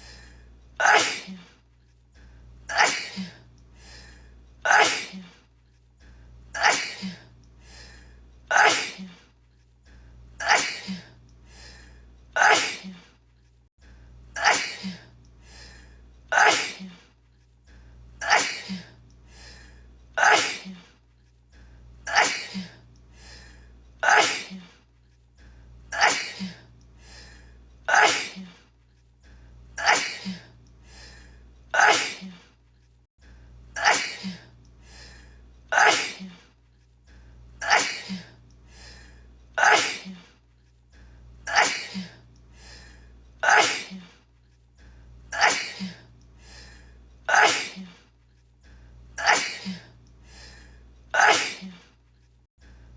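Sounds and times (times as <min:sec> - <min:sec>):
woman sneezing: 0:00.8 - 0:01.5, 0:04.7 - 0:05.3, 0:08.5 - 0:09.2, 0:12.4 - 0:13.0, 0:16.3 - 0:17.0, 0:20.2 - 0:20.8, 0:24.0 - 0:24.7, 0:27.9 - 0:28.5, 0:31.8 - 0:32.4, 0:35.8 - 0:36.4, 0:39.6 - 0:40.3, 0:43.4 - 0:44.1, 0:45.4 - 0:46.0, 0:47.3 - 0:48.0, 0:49.2 - 0:49.8, 0:51.2 - 0:51.8.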